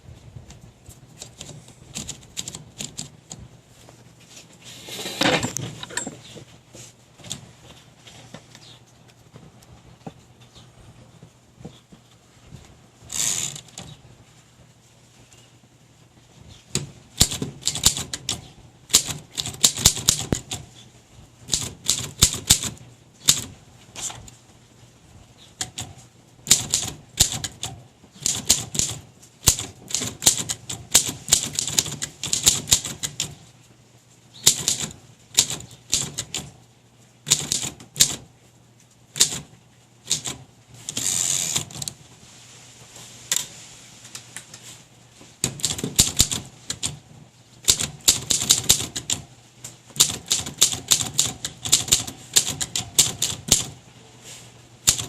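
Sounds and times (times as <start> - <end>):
typewriter keys clacking: 1.2 - 3.4, 16.8 - 20.7, 21.5 - 23.6, 25.6 - 33.4, 34.4 - 36.6, 37.3 - 38.2, 39.2 - 42.0, 45.4 - 47.0, 47.6 - 49.2, 50.0 - 53.8.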